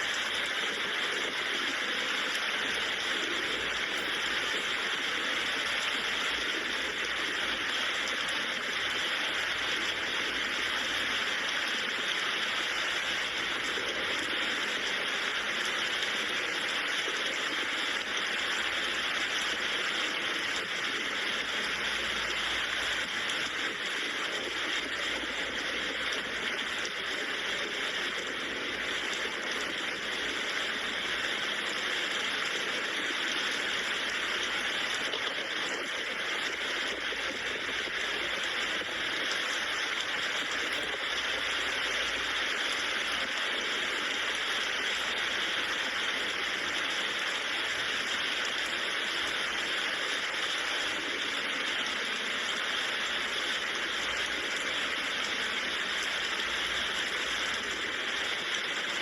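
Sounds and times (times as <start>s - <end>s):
steady rainfall hiss: 0.0s - 59.0s.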